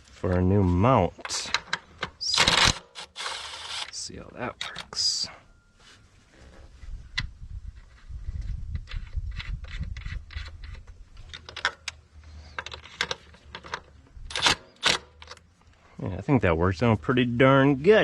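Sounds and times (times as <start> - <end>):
low rumbling handling noise: 6.2 - 15.8
metal parts clicking and clinking: 8.8 - 15.4.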